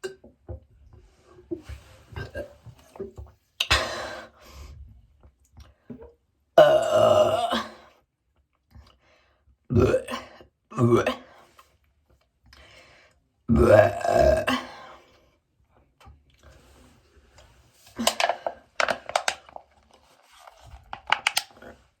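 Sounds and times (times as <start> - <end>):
person burping: 2.2 - 2.6, 6.6 - 7.9, 9.7 - 11.4, 13.5 - 15.0.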